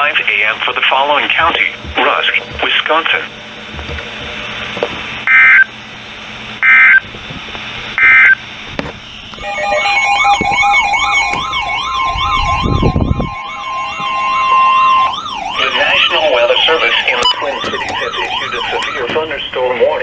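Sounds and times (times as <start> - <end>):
digital data tone bursts: 5.2 - 5.7, 6.6 - 7.0, 8.0 - 8.4, 9.4 - 19.8
warbling alert tones: 9.4 - 19.5.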